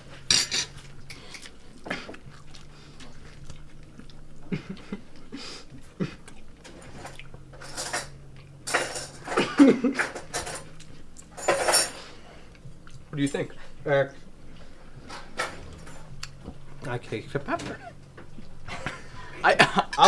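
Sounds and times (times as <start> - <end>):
forks clinking against a dish: 0.3 - 1.4, 7.6 - 12.1.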